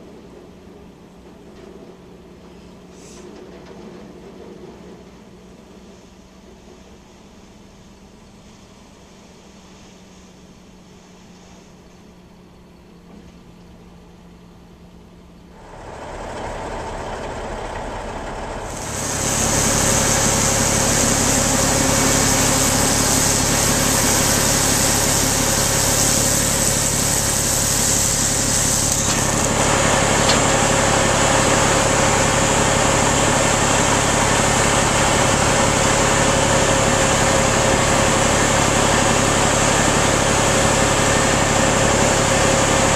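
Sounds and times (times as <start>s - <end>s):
heavy engine running: 15.5s - 42.9s.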